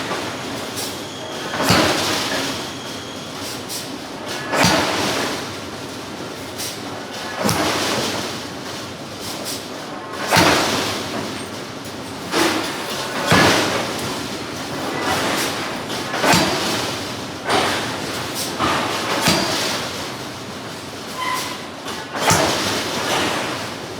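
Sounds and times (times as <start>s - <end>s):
forge machinery noise: 0.0s - 23.9s
forging hammer striking steel: 7.4s - 8.2s, 10.3s - 20.2s, 22.1s - 23.5s.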